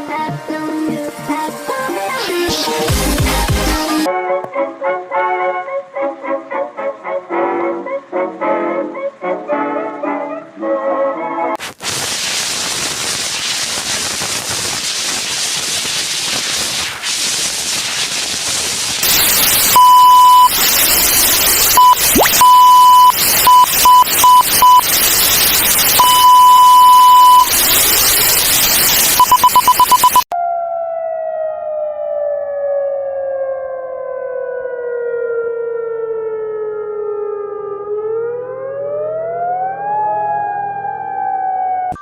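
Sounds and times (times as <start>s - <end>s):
loud static hiss: 11.6s - 30.3s
high electronic beeps: 19.0s - 30.3s
siren falling in pitch: 30.3s - 42.0s.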